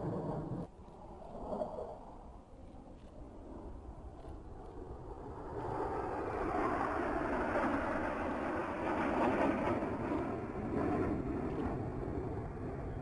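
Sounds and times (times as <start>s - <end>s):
jets flying past: 3.2s - 13.0s.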